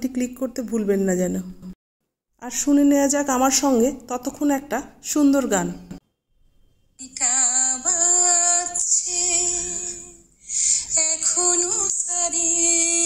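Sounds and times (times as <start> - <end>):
woman singing: 7.0 - 13.0.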